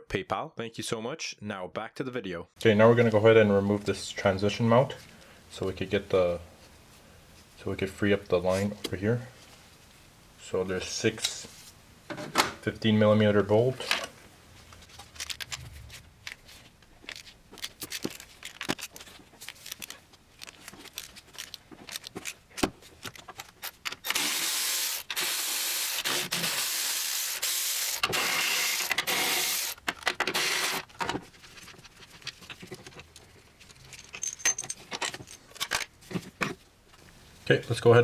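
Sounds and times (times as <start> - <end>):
cordless ratchet spinning: 24.0 - 29.8.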